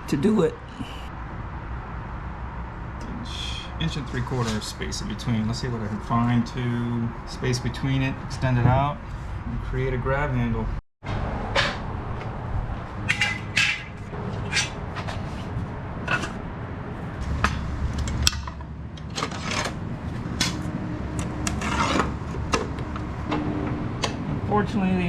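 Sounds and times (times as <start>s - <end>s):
metal parts clinking and rattling: 13.0s - 15.3s, 17.4s - 19.8s.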